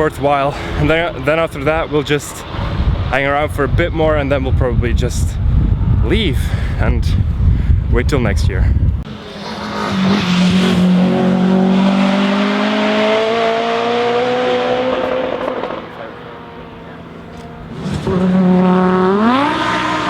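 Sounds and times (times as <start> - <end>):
racing cars accelerating past: 9.1 - 20.0.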